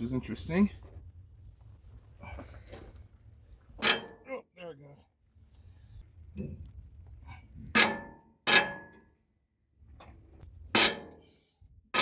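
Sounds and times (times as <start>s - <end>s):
rusted bolt creaking: 3.6s - 4.3s, 7.6s - 9.2s, 9.9s - 12.0s.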